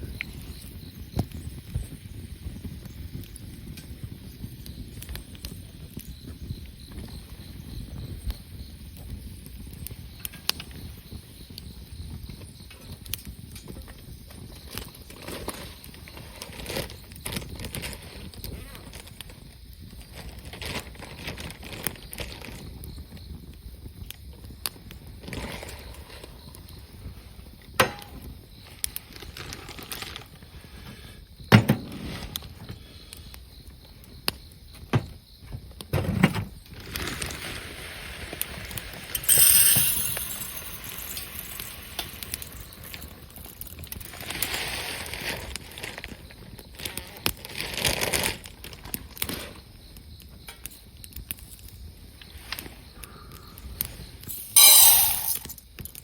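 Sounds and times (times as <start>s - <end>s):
campfire crackling and popping: 0.0s - 15.2s, 21.6s - 30.4s, 40.7s - 47.4s
rustling hiss: 36.6s - 46.2s.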